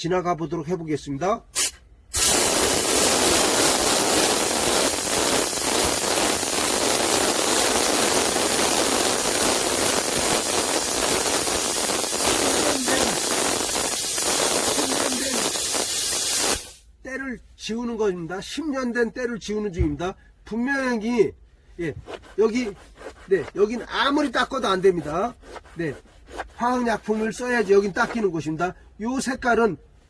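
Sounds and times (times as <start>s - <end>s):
steam nozzle hissing: 1.6s - 16.8s.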